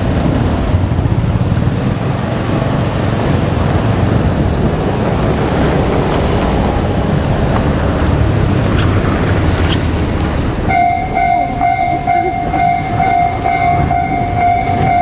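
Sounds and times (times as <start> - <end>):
train rumbling past: 0.0 - 15.0.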